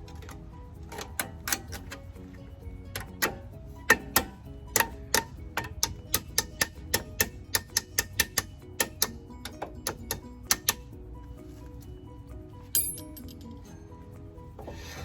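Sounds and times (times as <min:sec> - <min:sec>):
quiet background music: 0:00.0 - 0:15.0
sharp metallic clicks: 0:02.9 - 0:11.0.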